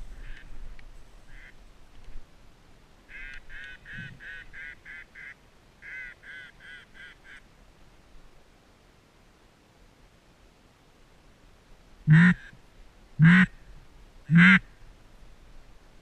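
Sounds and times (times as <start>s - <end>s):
duck quacking: 12.1s - 12.5s, 13.2s - 13.5s, 14.3s - 14.6s.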